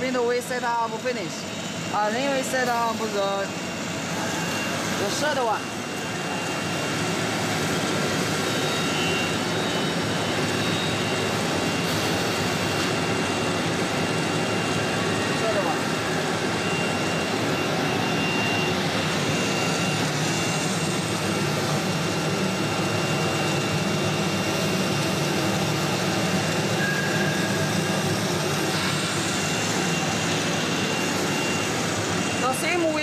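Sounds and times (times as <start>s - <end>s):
thin high whine: 0.0s - 33.0s
workshop machinery drone: 0.0s - 33.0s.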